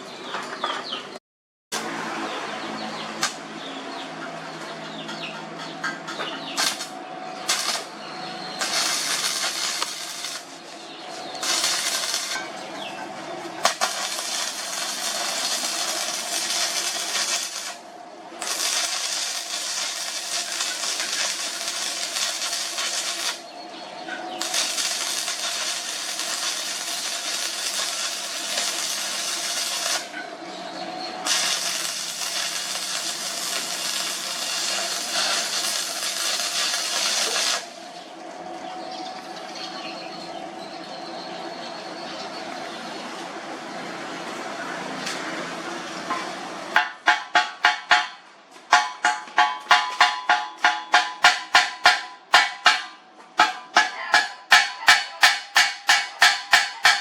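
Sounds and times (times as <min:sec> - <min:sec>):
welding machine hum: 0:06.5 - 0:38.8
welding arc crackling and hissing: 0:06.6 - 0:12.5, 0:13.6 - 0:17.8, 0:18.4 - 0:23.4, 0:24.4 - 0:30.1, 0:31.2 - 0:37.8.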